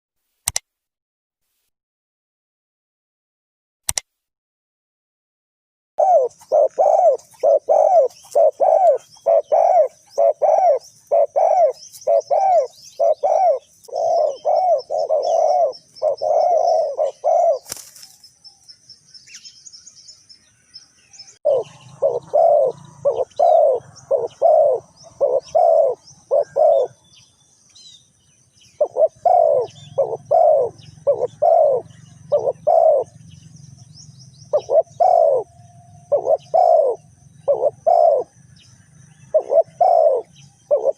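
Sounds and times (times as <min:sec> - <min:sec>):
sharp click: 0:00.4 - 0:00.7, 0:03.9 - 0:04.1
dove cooing: 0:06.0 - 0:18.2, 0:21.4 - 0:27.1, 0:28.8 - 0:38.4, 0:39.1 - 0:40.9
small birds chirping: 0:06.0 - 0:40.9.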